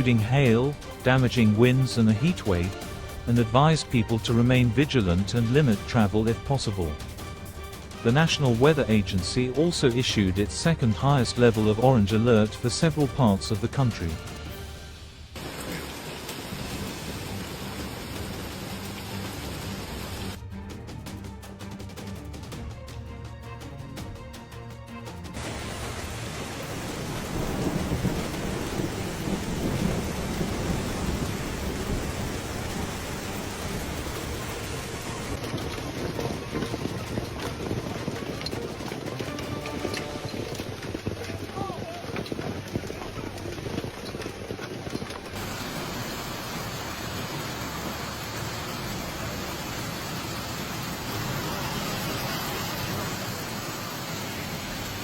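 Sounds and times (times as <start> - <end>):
heavy rain downpour: 0.0 - 20.4, 25.4 - 55.0
low thunder rumble: 25.4 - 35.8.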